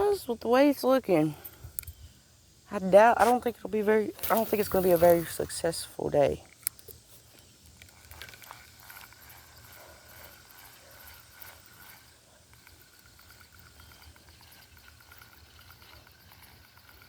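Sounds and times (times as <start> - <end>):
insects chirping: 0.0 - 17.0
thin steady tone: 0.0 - 17.0
fine high ticking: 7.6 - 17.0.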